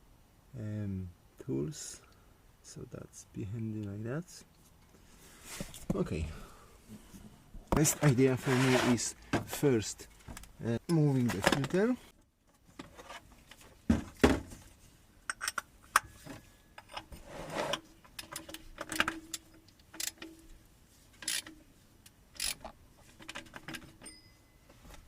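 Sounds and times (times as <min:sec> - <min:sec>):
metal tools clinking on oil filter: 0:23.2 - 0:24.7.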